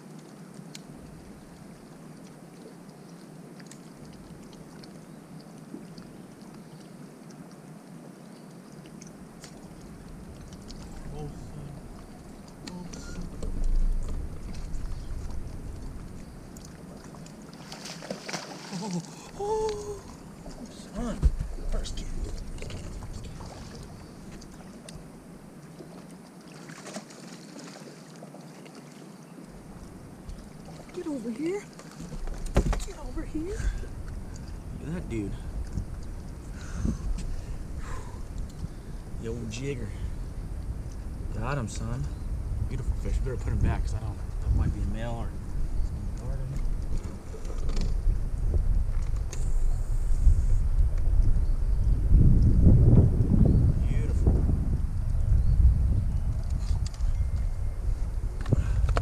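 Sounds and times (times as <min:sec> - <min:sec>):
low boat hum: 0:00.0 - 0:59.0
wash of water: 0:16.6 - 0:24.0.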